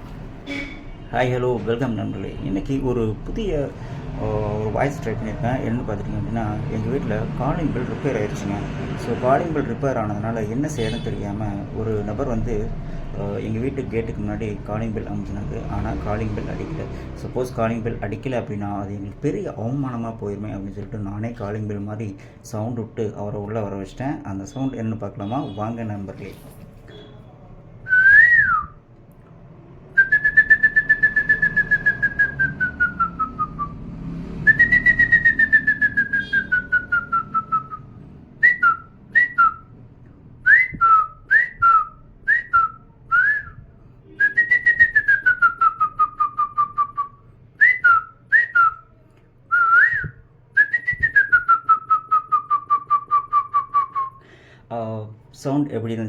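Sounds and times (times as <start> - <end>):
man whistling: 27.9 - 28.8, 30.0 - 33.8, 34.4 - 39.8, 40.4 - 54.3.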